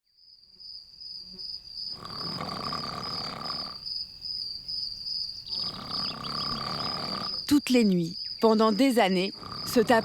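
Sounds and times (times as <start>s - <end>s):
man snoring heavily: 1.9s - 3.9s, 5.5s - 7.5s, 9.2s - 10.0s.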